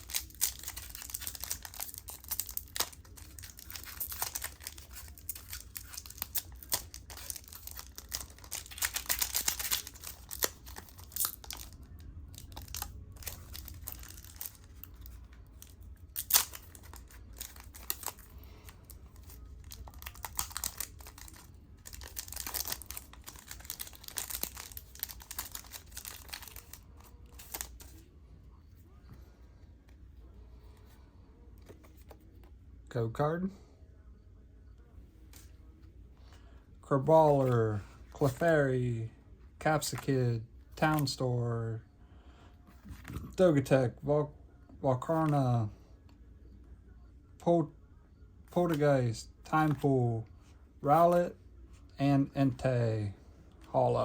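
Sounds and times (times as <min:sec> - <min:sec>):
foil wrapper tearing and crinkling: 0:00.0 - 0:11.8, 0:16.1 - 0:18.2, 0:19.2 - 0:27.8.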